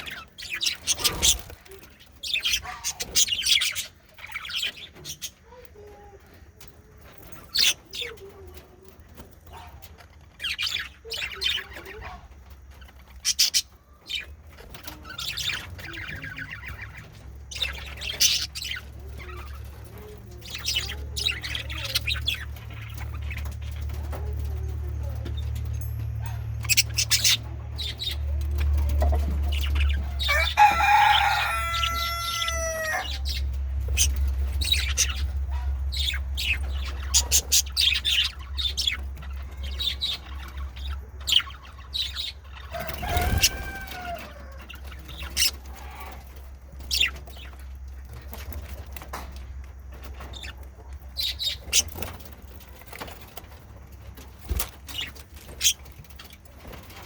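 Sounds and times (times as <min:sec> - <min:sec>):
budgerigars chattering: 0:00.0 - 0:05.6, 0:13.0 - 0:25.6, 0:26.2 - 0:49.4, 0:50.0 - 0:57.0
warbling bird calls: 0:28.8 - 0:48.5.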